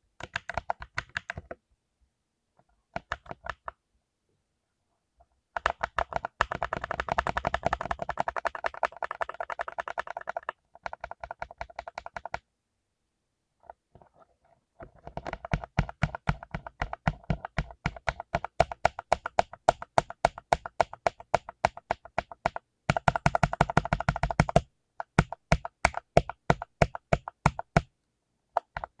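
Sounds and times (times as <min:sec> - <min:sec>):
mechanical keyboard typing: 0:00.2 - 0:01.6, 0:03.0 - 0:03.7, 0:05.6 - 0:12.4, 0:14.9 - 0:27.9, 0:28.6 - 0:29.0.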